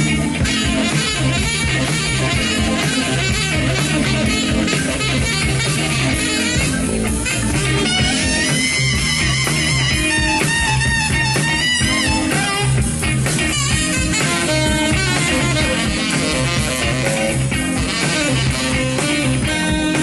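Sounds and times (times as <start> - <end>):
pitch-bending lead line: 0.0 - 20.0
soul band playing: 0.0 - 20.0.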